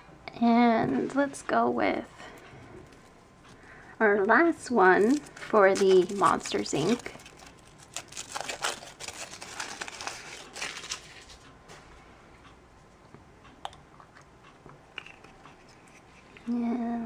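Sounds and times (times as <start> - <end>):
wrapper crinkling and tearing: 5.0 - 11.4.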